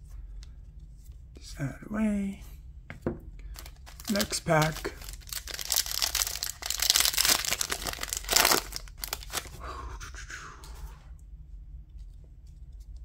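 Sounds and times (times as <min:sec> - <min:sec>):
plastic wrapper crinkling: 0:03.5 - 0:09.6.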